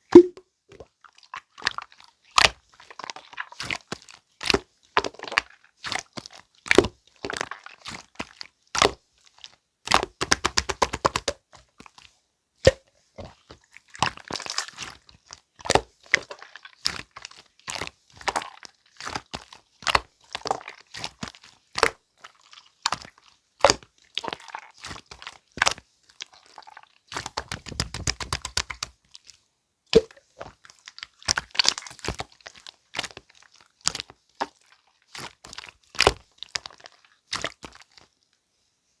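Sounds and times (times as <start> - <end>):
slime squished by hand: 0.1 - 0.4, 12.7 - 38.2.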